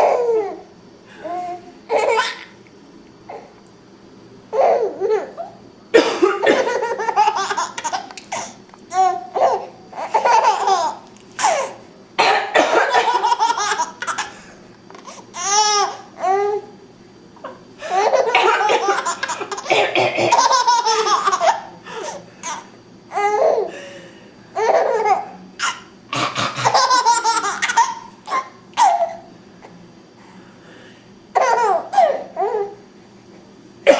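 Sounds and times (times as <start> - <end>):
baby laughing: 0.0 - 0.6, 1.9 - 2.6, 4.6 - 5.5, 6.5 - 11.8, 12.9 - 14.3, 15.0 - 16.6, 17.9 - 21.7, 22.4 - 23.7, 24.6 - 29.3, 31.4 - 32.7
woman coughing: 6.0 - 6.8, 12.2 - 13.3, 18.4 - 20.5.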